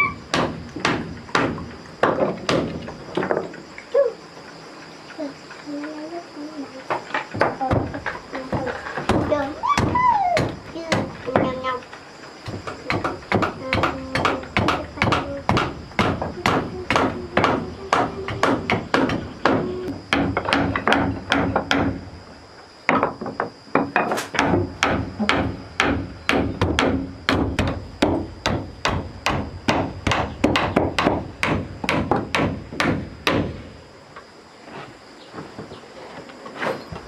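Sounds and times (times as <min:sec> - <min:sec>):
hammer driving nails into wood: 0:12.5 - 0:22.0, 0:23.8 - 0:33.6.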